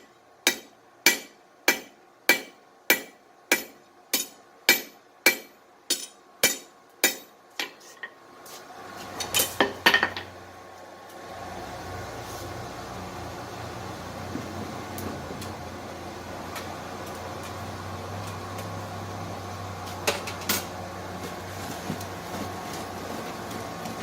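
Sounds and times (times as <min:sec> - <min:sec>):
hammer striking steel on anvil: 0:00.0 - 0:07.8
steady hum: 0:00.0 - 0:24.0.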